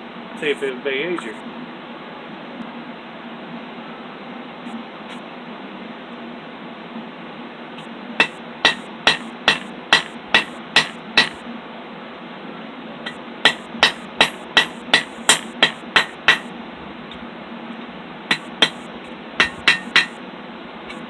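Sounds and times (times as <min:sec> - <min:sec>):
hammer striking hot steel: 0:08.2 - 0:11.4, 0:13.0 - 0:16.5, 0:18.3 - 0:18.8, 0:19.4 - 0:20.2.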